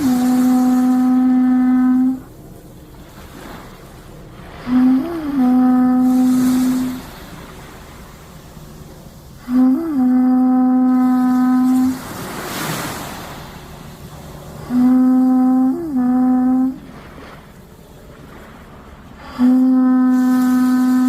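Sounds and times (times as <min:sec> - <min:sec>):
conch shell trumpet blasts: 0:00.0 - 0:02.3, 0:04.6 - 0:07.1, 0:09.4 - 0:13.4, 0:14.6 - 0:16.9, 0:19.4 - 0:21.0.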